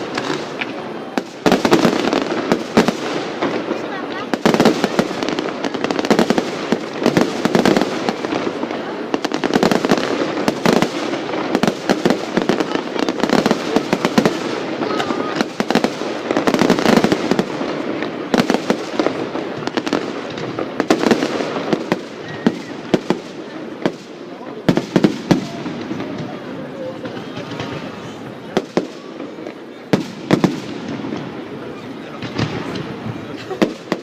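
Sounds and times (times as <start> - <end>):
fireworks bangs and crackles: 0.0 - 34.0.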